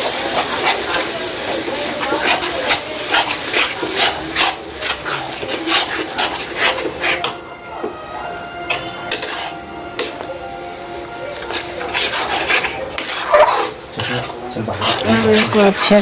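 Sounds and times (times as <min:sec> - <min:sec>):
spoon scraping and stirring in pan: 0:00.0 - 0:16.0.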